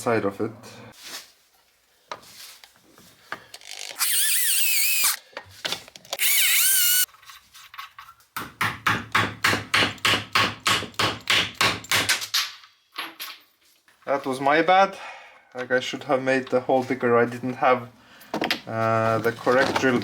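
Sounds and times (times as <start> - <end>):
electric drill whining: 3.6 - 5.2, 6.2 - 7.1.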